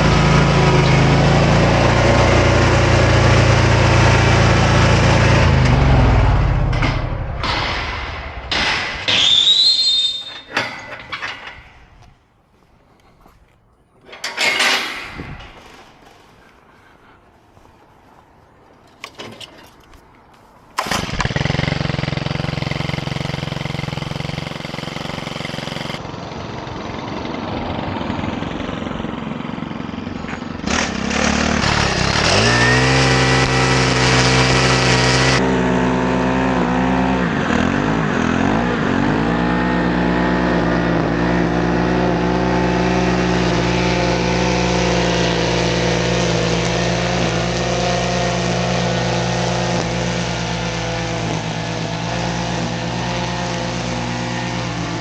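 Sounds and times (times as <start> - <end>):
small petrol engine running: 0.0 - 8.0, 20.8 - 55.0.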